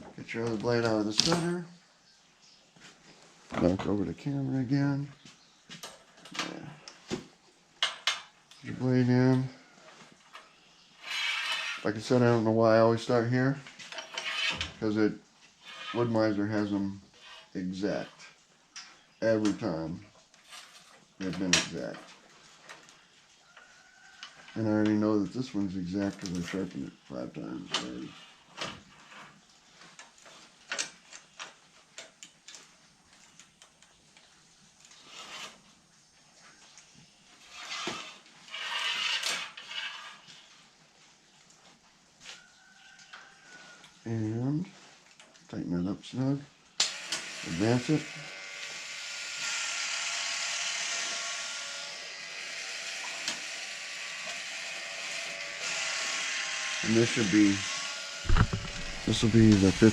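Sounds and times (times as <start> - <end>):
blade sharpener motor hum: 46.9 - 59.9
sharp knock: 58.3 - 59.1.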